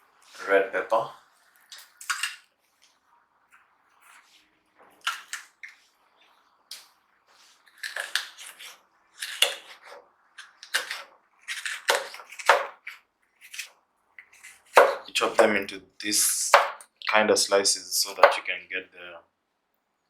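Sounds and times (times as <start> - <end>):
knife cutting on cutting board: 7.6 - 15.6.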